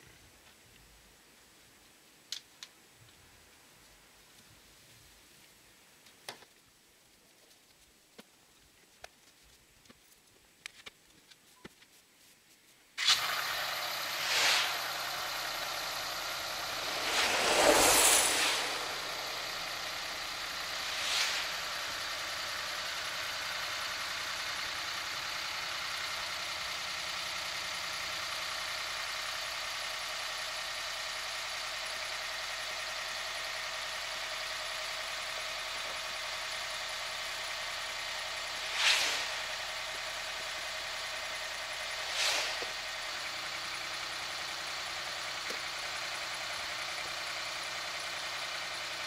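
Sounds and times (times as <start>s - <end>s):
snow being brushed off: 13.0s - 22.2s, 38.6s - 39.5s, 42.0s - 42.8s
diesel pickup idling: 13.2s - 17.7s, 18.8s - 49.0s.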